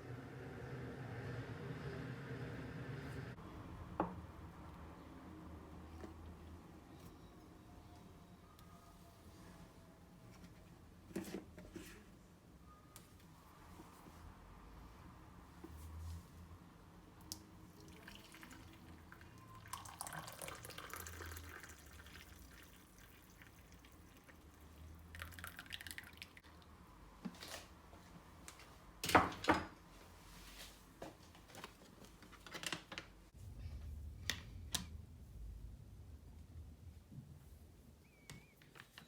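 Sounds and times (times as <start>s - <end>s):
liquid pouring and dripping: 17.2s - 26.5s
kitchenware clinks and knocks: 29.0s - 29.8s.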